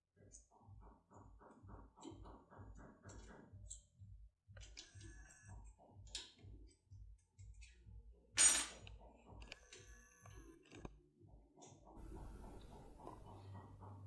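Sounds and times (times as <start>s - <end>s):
ringing metallic clink: 8.4s - 8.8s.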